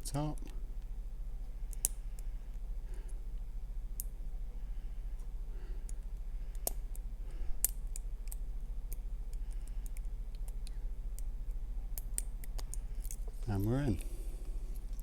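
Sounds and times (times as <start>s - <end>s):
light scraping of lock pick: 12.4s - 14.1s.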